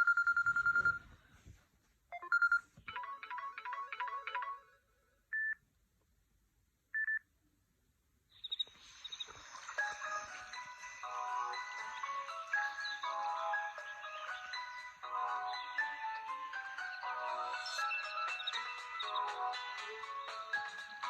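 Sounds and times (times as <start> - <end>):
phone ringtones: 0.0 - 1.0, 2.1 - 4.8.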